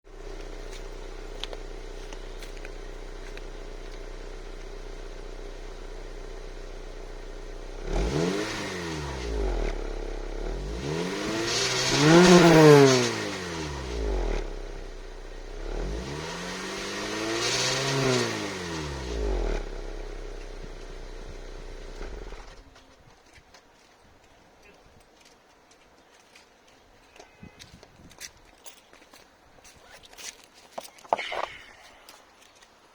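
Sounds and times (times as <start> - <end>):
car engine idling and revving: 0.1 - 22.8.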